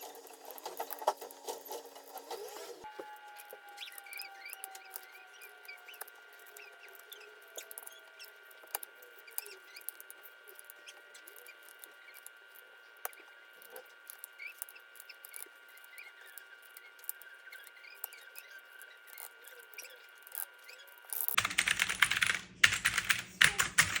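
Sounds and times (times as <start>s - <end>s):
mechanical keyboard clicks: 21.3s - 24.0s
rapid typing on keyboard: 21.3s - 24.0s.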